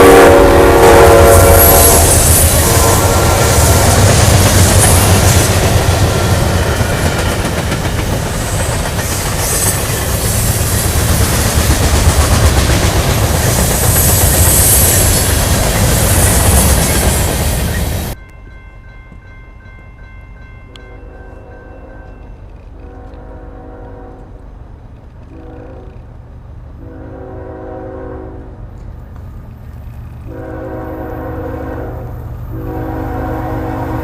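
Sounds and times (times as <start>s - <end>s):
train wheels clattering on rails: 1.2s - 18.2s.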